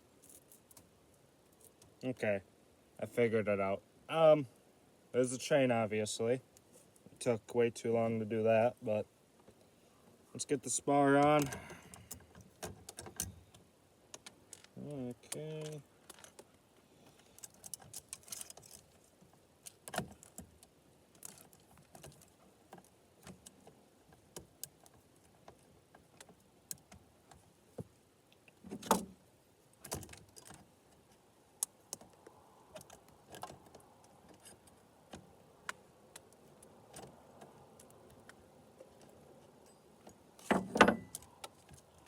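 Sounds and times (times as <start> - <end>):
chain and bar clicking: 17.1 - 19.0, 35.6 - 42.0.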